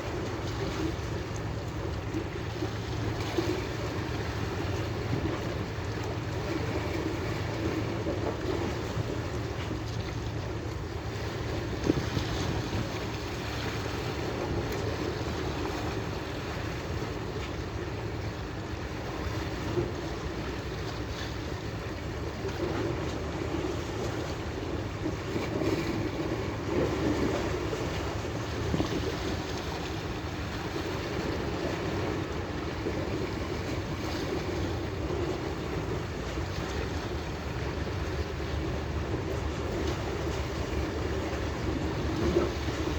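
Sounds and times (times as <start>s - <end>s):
wind and water rumbling hiss: 0.0s - 42.9s.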